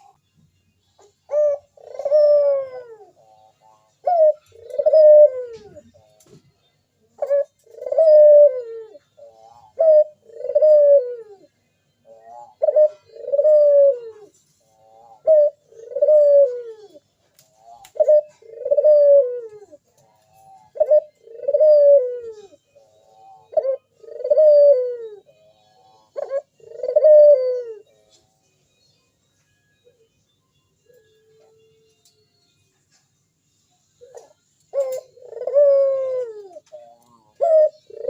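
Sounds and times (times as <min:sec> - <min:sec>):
dove cooing: 0:01.0 - 0:06.4, 0:07.1 - 0:28.1, 0:34.0 - 0:38.0.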